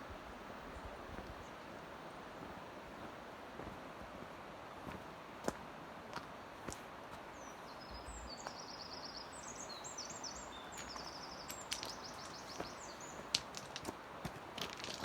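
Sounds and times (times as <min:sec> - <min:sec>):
songbird singing trilled phrases: 0:07.4 - 0:13.4.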